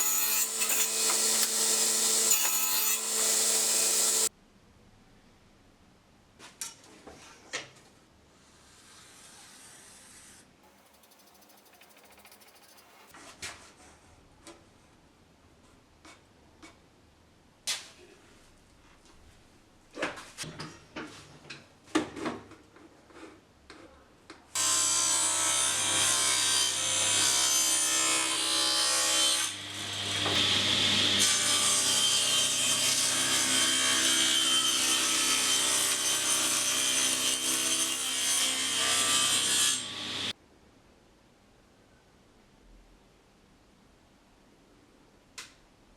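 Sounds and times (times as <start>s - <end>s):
table saw cutting wood: 0.0s - 4.3s, 24.6s - 40.3s.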